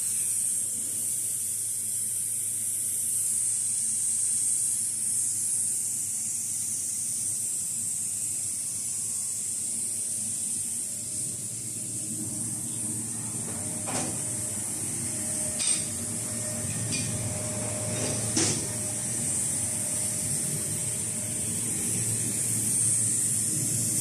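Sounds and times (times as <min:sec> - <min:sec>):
laser cutter high hiss: 0:00.0 - 0:24.0
low machine rumble: 0:10.2 - 0:24.0.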